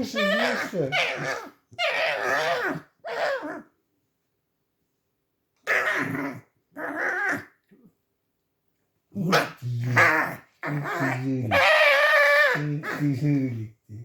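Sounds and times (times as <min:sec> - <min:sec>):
fox growling: 0:00.0 - 0:03.7, 0:05.6 - 0:07.9, 0:09.1 - 0:13.2
fox squealing: 0:00.0 - 0:03.7, 0:09.3 - 0:13.0.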